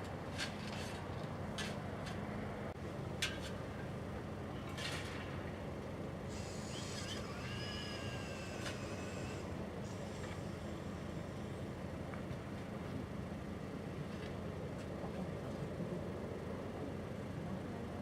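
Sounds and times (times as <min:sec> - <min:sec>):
low engine hum: 0:00.0 - 0:18.0
high metallic squeal: 0:06.3 - 0:09.4.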